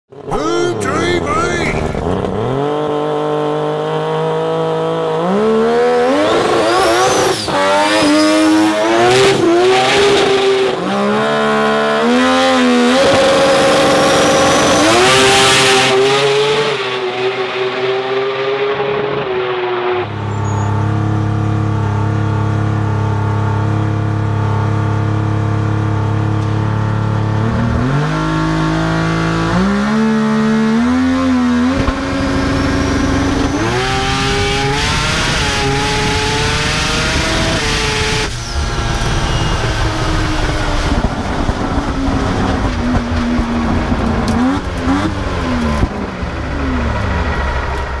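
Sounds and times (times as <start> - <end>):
rotary engine accelerating: 26.3 - 48.0.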